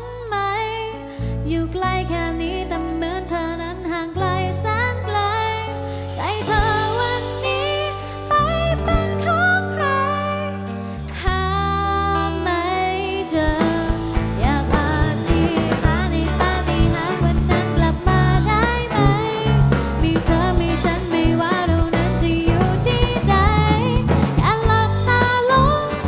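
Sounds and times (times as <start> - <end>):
sustained bass: 0.0 - 26.0
pop-rock band playing: 3.2 - 26.0
drums steady beat: 6.4 - 8.0, 13.0 - 26.0.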